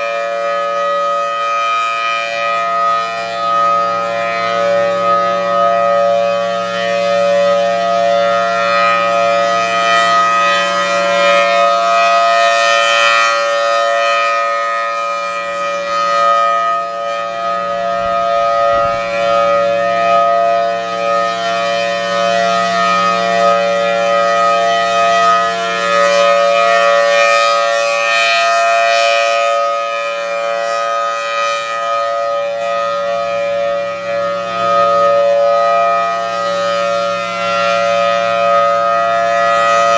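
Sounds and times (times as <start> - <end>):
warning siren steady tone: 0.0 - 39.9.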